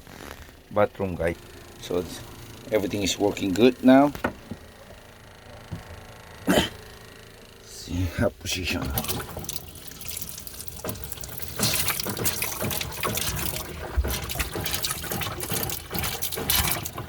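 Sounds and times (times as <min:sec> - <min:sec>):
tap water splashing into basin: 0:08.8 - 0:17.0.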